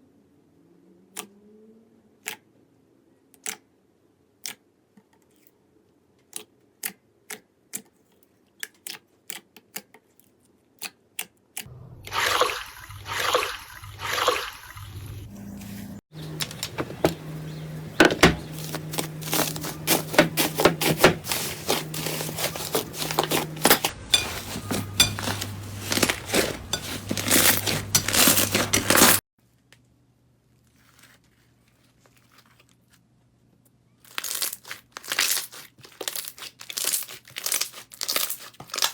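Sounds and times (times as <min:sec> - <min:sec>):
wet slime squishes: 0:34.0 - 0:38.9
slime crackling and popping: 0:34.1 - 0:38.9.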